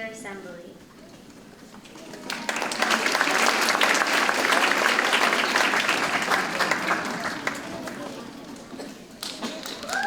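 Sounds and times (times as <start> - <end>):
audience applauding: 2.0 - 10.0.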